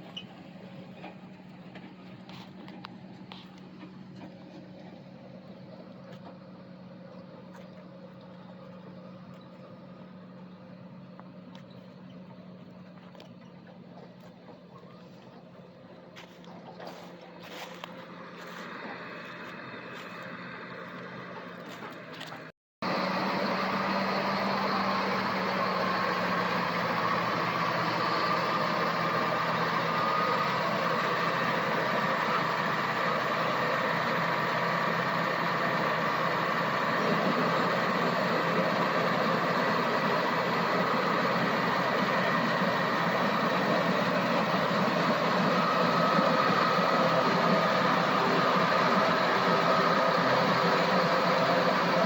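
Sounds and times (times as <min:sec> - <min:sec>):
farm machinery droning: 0:00.0 - 0:52.0.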